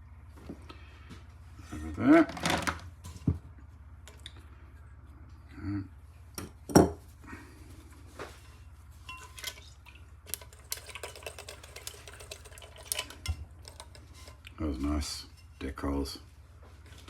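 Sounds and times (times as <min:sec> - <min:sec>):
steady low hum: 0:00.0 - 0:17.0
small metal parts clinking: 0:09.1 - 0:14.4.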